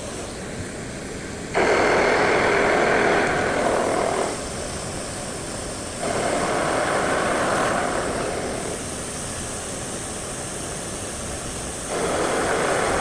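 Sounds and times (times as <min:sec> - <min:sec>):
machining center running: 0:11.9 - 0:13.0.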